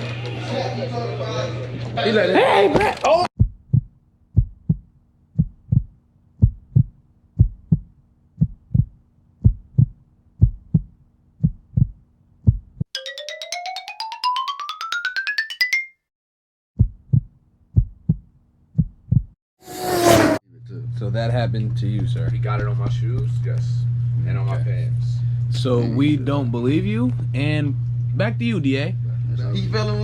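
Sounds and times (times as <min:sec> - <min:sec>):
heartbeat thumps: 0:03.4 - 0:12.8, 0:16.8 - 0:19.4.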